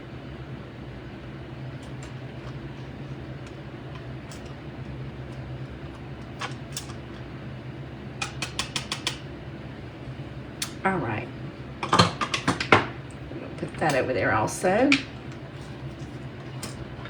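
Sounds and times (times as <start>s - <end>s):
steady low hum: 0.0s - 17.0s
utensil clicking against bowl: 8.2s - 9.3s.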